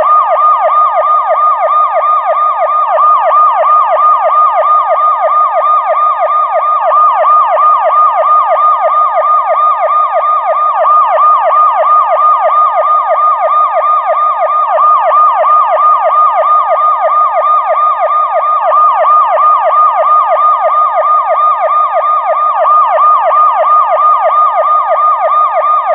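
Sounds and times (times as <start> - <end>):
police siren wailing: 0.0 - 25.9.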